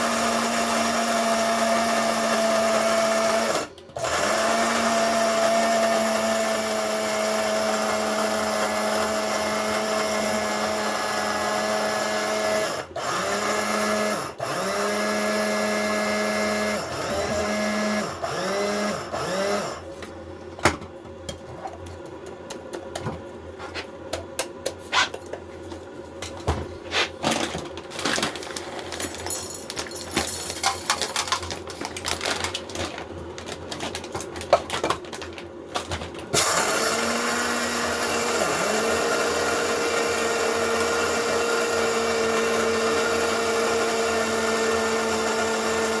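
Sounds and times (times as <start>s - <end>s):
kitchen appliance motor humming: 0.0s - 19.9s, 36.3s - 46.0s.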